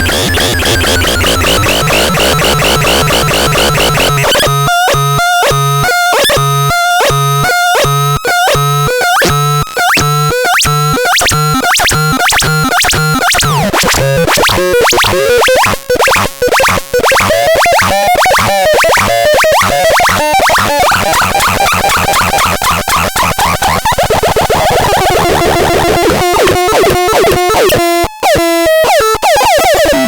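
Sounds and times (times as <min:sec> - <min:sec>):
sliding synth pitches: 0:00.0 - 0:04.7
synthesizer electronic bleeps: 0:00.0 - 0:22.5, 0:24.0 - 0:30.0.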